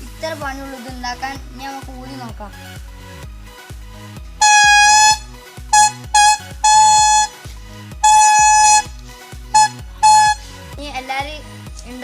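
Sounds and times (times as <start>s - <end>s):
leaf stalk whistle toots: 4.4s - 5.2s, 5.8s - 7.3s, 8.0s - 8.9s, 9.6s - 10.4s.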